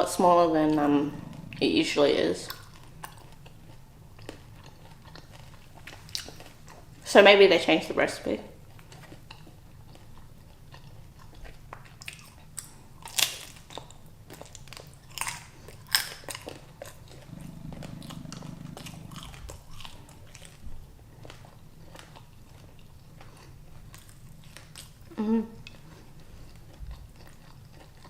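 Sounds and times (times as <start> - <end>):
low steady hum: 0.0 - 5.0, 17.2 - 24.5
crunchy chewing: 0.7 - 1.8, 8.7 - 28.0.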